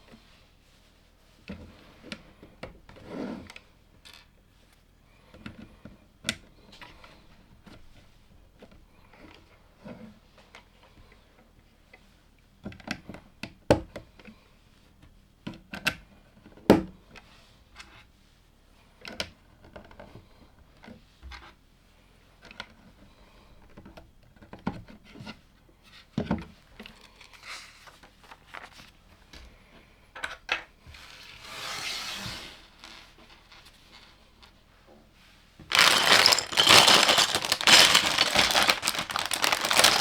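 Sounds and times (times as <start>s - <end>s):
plastic bricks clicking: 35.7s - 40.0s
short rustle: 35.7s - 40.0s.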